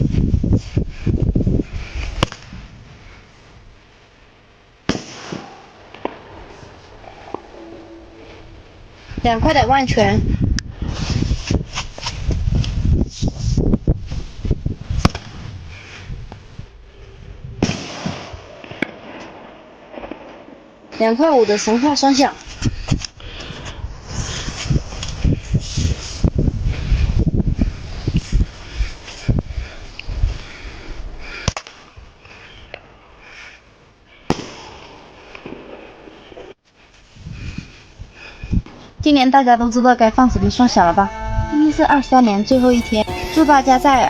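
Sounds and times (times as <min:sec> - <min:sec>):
firecracker bangs: 0:04.9 - 0:06.2.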